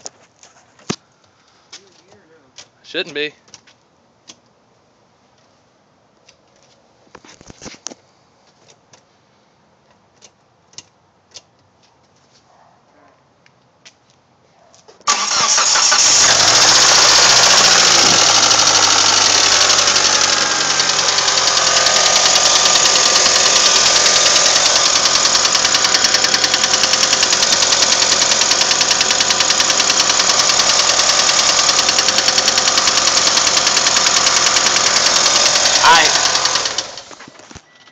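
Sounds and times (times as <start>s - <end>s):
car engine starting and idling: 15.1s - 37.5s.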